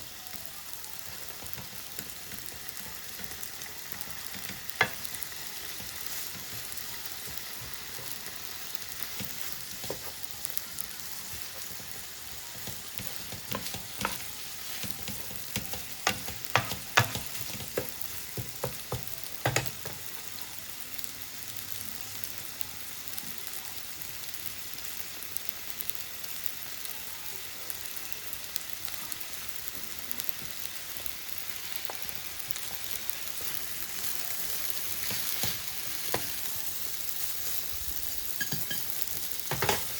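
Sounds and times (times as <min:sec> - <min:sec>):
noodles sizzling in a frying pan: 0:00.0 - 0:39.9
utensil clacking against a pan: 0:01.0 - 0:20.2, 0:33.4 - 0:37.7, 0:38.3 - 0:39.9.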